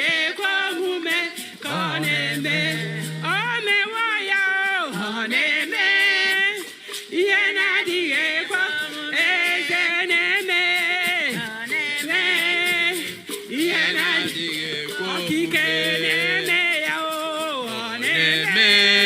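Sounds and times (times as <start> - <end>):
person singing with vibrato: 0.0 - 19.0
breaths: 6.6 - 7.1.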